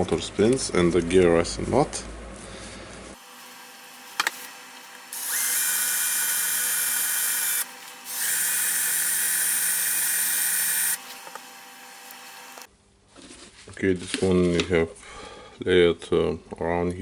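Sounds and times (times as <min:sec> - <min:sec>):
small power tool motor: 0:03.2 - 0:12.7.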